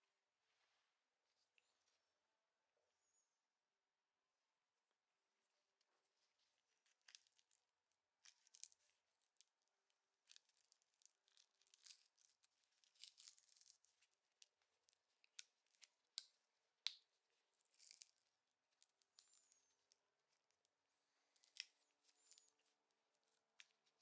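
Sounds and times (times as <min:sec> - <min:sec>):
faint clicks of small parts: 0:06.8 - 0:07.6, 0:08.2 - 0:09.6, 0:10.2 - 0:24.0.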